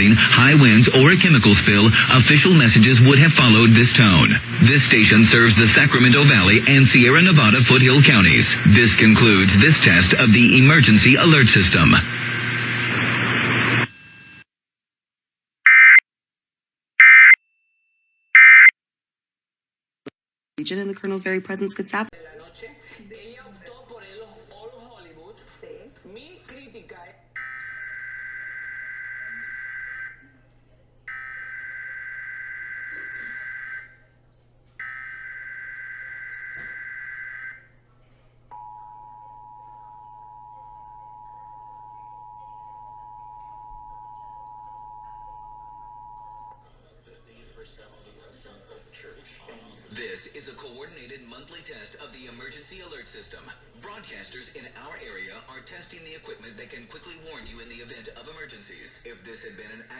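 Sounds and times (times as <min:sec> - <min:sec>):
buzzing data tone bursts: 0:27.4 - 0:30.3, 0:31.1 - 0:34.0, 0:34.8 - 0:37.7
two-tone attention signal: 0:27.4 - 0:30.4, 0:31.1 - 0:34.0, 0:34.8 - 0:37.7, 0:38.5 - 0:46.7.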